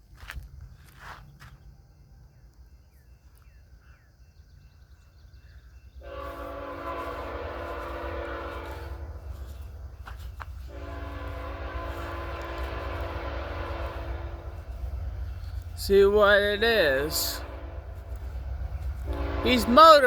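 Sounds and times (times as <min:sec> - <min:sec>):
train rumbling: 0:04.4 - 0:20.0
locomotive air horn: 0:06.0 - 0:20.0.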